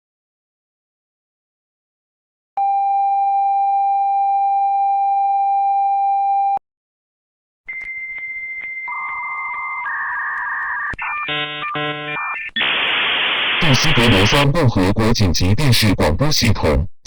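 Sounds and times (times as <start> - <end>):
steady electronic alert tones: 11.1 - 12.3.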